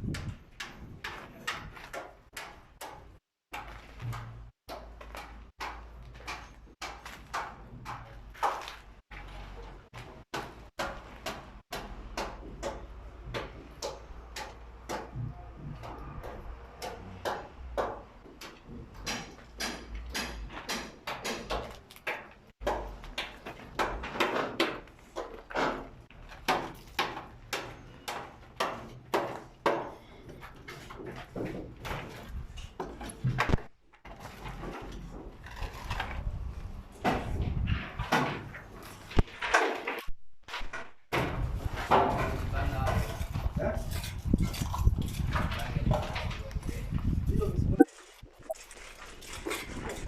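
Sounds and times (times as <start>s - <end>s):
hammers knocking nails into timber: 10.2s - 30.0s.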